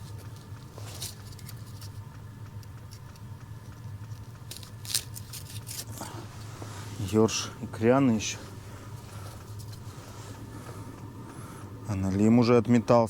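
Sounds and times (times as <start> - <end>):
handling rustling and clicks: 0.0 - 7.2, 8.9 - 9.9
steady low hum: 0.0 - 13.0.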